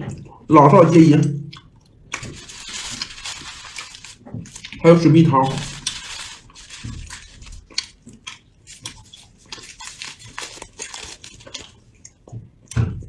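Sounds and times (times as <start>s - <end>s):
wet chewing mouth clicks: 7.4s - 12.9s.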